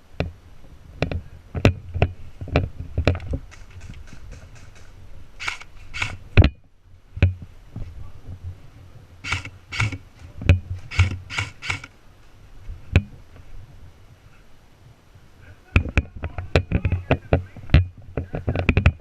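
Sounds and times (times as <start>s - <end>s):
sharp clicks or knocks: 1.0s - 6.6s, 9.2s - 11.9s.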